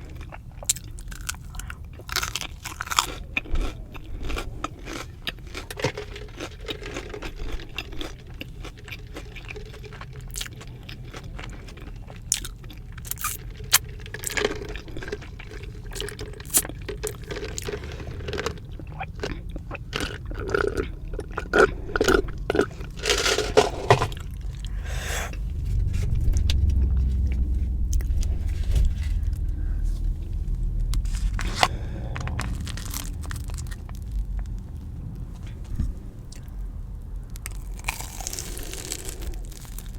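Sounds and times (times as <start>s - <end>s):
chewing and crunching: 0.0s - 39.9s
low rumble: 11.8s - 39.9s.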